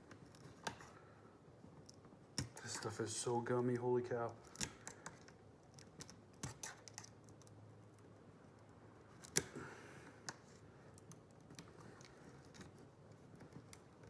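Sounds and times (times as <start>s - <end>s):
clicks and rubbing on plastic: 4.3s - 9.5s, 10.2s - 14.0s.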